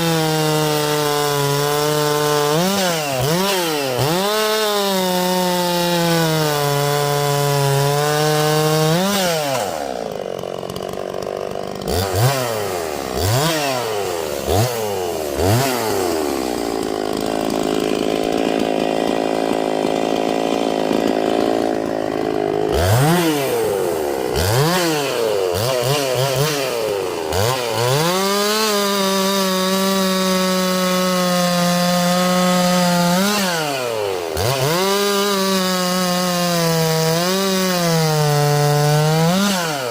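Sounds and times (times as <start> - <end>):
chainsaw revving: 0.0 - 39.9.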